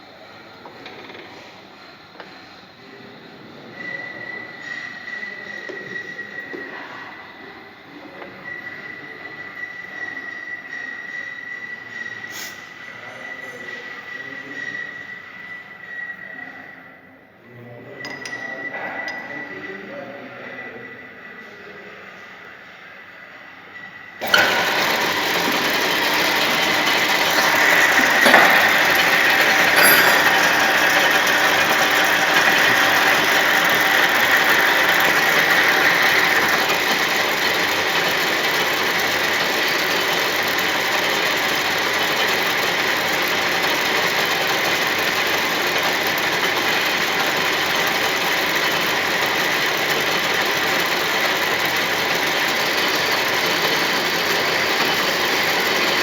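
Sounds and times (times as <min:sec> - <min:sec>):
metal lathe running: 0:24.2 - 0:56.0.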